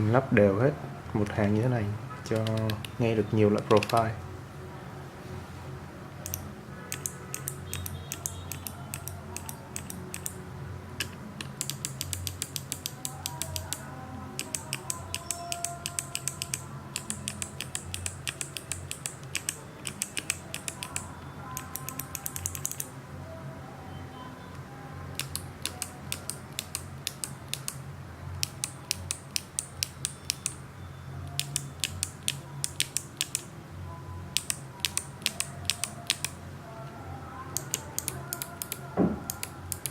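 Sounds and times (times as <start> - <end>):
clicky keyboard typing: 2.3 - 3.0, 3.6 - 4.1, 6.2 - 10.4, 11.0 - 13.8, 14.4 - 22.9, 25.2 - 27.8, 28.4 - 30.6, 31.2 - 33.5, 34.3 - 36.4, 37.6 - 39.9.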